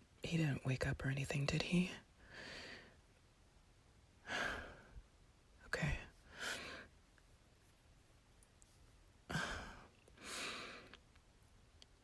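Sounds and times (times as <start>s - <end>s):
woman sighing: 9.3s - 10.7s.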